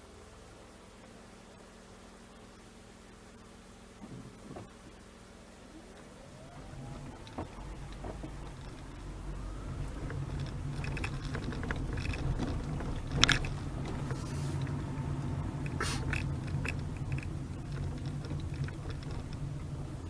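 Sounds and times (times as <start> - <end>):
car engine and road hum: 0.0 - 20.0
small clicks and rattles: 5.9 - 20.0.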